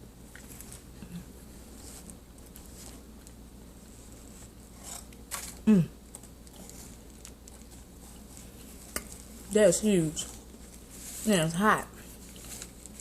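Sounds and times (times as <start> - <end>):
brittle food crackling: 4.4 - 13.0
short vocal mm: 5.7 - 6.0.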